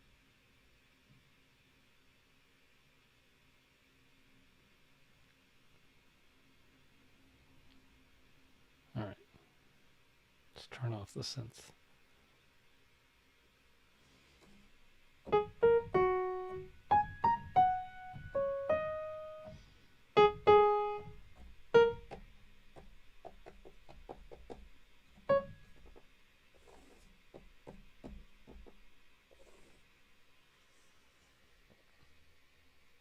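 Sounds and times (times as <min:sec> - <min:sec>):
piano notes ringing out: 0:15.3 - 0:22.6, 0:25.2 - 0:26.0
keyboard keys clicking: 0:20.2 - 0:26.0.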